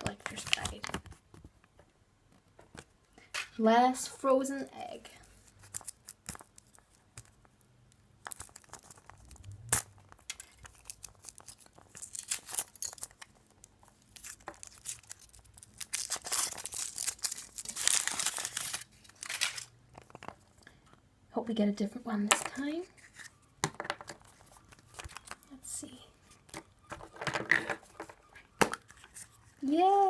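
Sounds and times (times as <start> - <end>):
foil wrapper crinkling: 8.2 - 19.7, 24.2 - 25.4.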